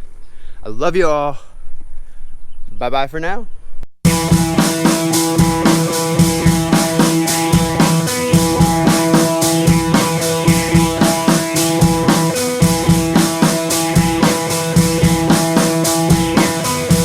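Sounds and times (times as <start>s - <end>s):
rock music with drums and guitar: 4.1s - 17.0s.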